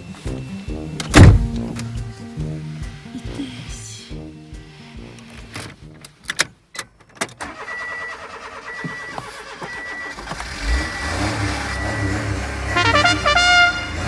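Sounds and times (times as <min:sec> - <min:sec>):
car engine starting and running: 0:00.0 - 0:14.0
jump starter clicks: 0:00.9 - 0:02.1
beeping: 0:07.4 - 0:14.0.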